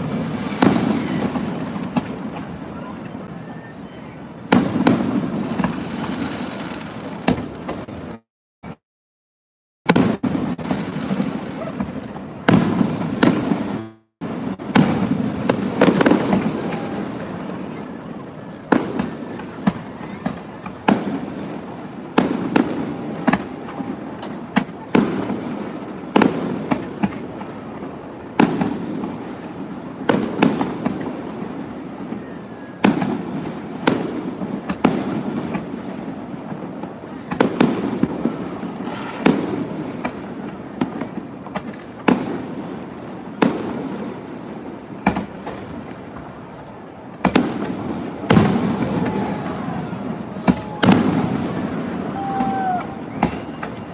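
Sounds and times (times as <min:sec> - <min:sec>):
fireworks bursting with echo: 0:00.0 - 0:08.8, 0:09.9 - 0:53.9.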